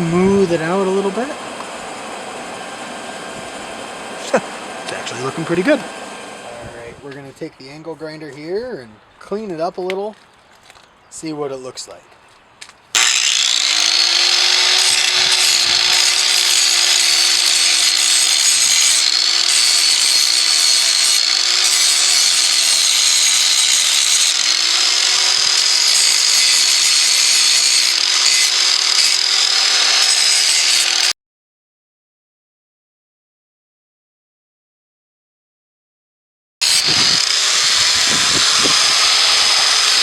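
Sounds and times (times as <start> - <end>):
angle grinder grinding steel: 0.0 - 6.6, 12.9 - 31.1, 36.6 - 40.0.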